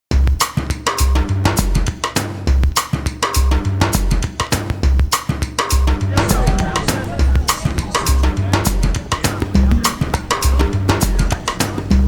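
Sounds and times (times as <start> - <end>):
drum-kit beat: 0.1 - 12.0
deep bass notes: 6.0 - 12.0.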